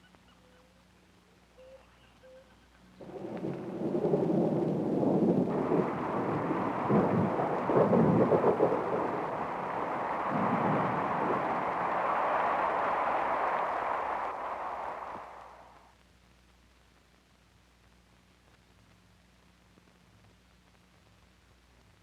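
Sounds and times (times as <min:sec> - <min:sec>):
thunder rumbles: 0:03.0 - 0:15.8
heavy rain: 0:03.0 - 0:15.9.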